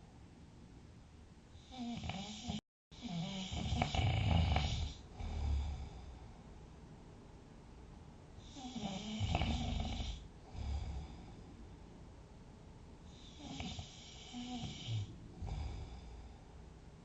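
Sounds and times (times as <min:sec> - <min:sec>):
person snoring: 0:01.6 - 0:06.2, 0:08.4 - 0:11.4, 0:13.2 - 0:16.4.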